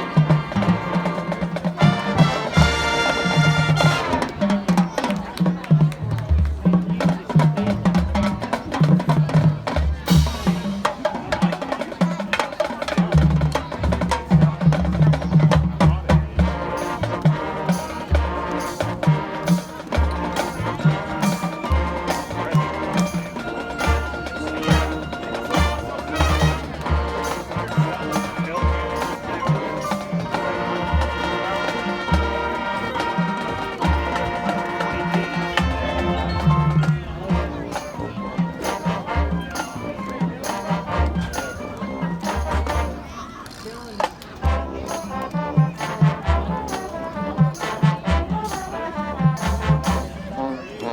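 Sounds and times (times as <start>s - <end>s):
horns playing: 0.0s - 4.8s, 16.2s - 43.3s, 44.4s - 50.9s
marching band playing: 0.0s - 50.9s.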